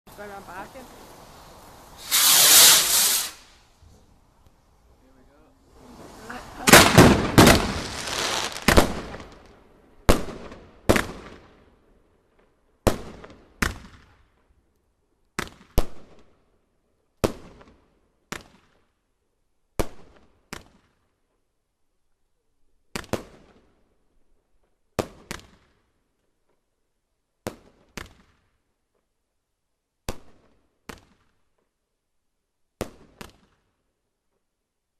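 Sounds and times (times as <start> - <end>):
fireworks bangs echoing: 2.0 - 3.6, 5.8 - 9.5.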